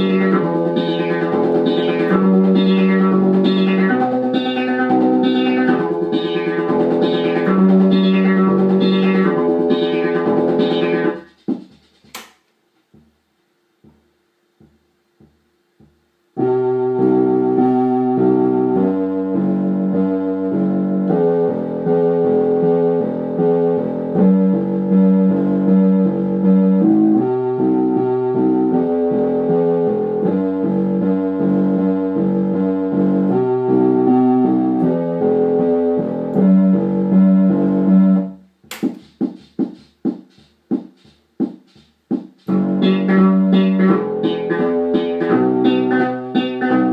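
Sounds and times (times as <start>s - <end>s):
keyboard plucked notes: 0.0s - 11.2s, 42.4s - 46.9s
keyboard bass line: 0.0s - 12.1s, 13.8s - 39.4s, 42.4s - 46.9s
electronic keyboard organ chords: 0.0s - 12.2s, 13.8s - 46.9s.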